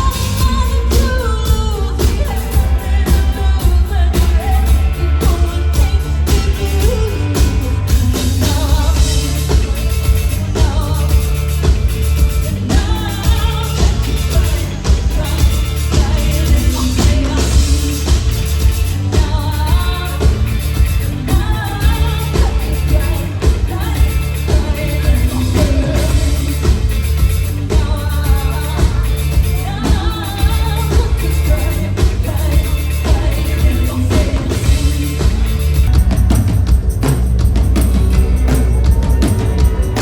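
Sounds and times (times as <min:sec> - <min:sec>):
pop-rock song with singing: 0:00.0 - 0:40.0.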